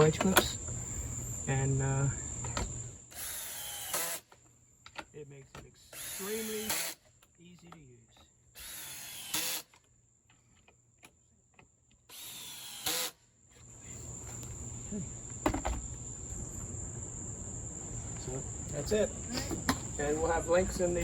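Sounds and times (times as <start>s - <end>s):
crickets chirring: 0.0s - 9.2s, 13.6s - 21.0s
power drill driving screws: 3.1s - 4.4s, 5.9s - 7.0s, 8.6s - 9.8s, 12.1s - 13.2s.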